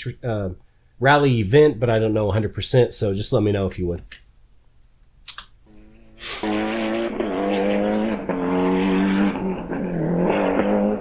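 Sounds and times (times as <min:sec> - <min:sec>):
rally car engine accelerating: 0:05.8 - 0:11.0.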